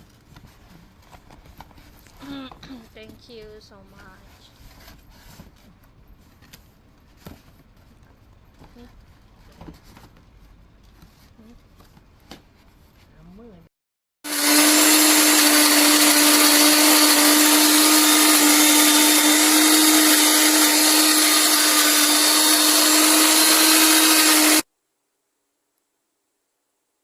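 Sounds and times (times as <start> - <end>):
mixer grinder motor whine: 14.2 - 24.7.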